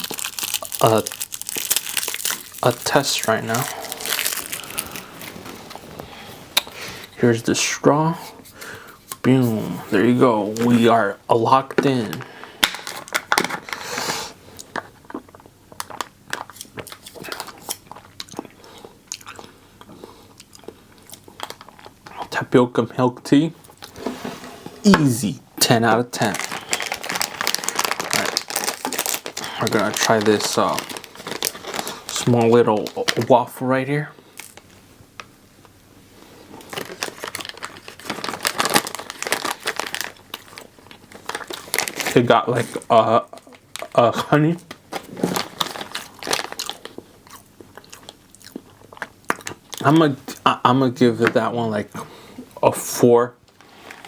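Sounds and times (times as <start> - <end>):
plastic wrapper crinkling: 0.0 - 6.8, 9.9 - 14.1, 14.7 - 18.5, 21.1 - 22.2, 24.9 - 35.3, 36.6 - 50.2
chewing with wet mouth clicks: 15.1 - 22.0.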